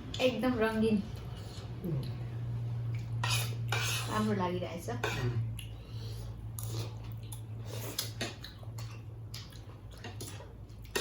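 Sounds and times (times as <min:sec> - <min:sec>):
person chewing food: 0:05.5 - 0:11.0.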